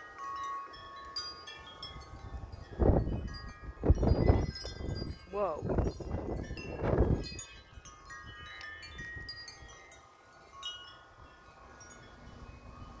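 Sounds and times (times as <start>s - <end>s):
wind chimes ringing: 0.0s - 13.0s
wind rumble on microphone: 1.7s - 9.9s.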